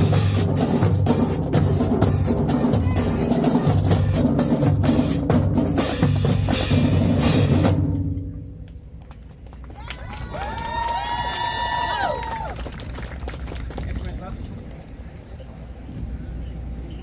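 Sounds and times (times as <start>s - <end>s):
marching band drums: 0.0s - 8.5s.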